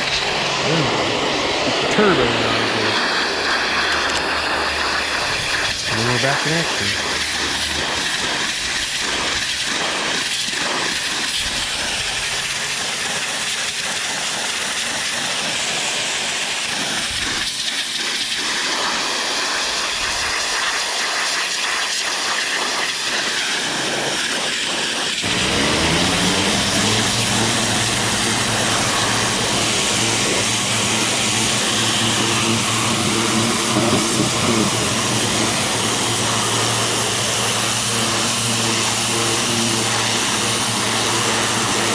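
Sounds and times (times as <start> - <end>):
electric motor and pump humming: 0.0 - 41.9
pressure washer spray hiss: 0.0 - 41.9.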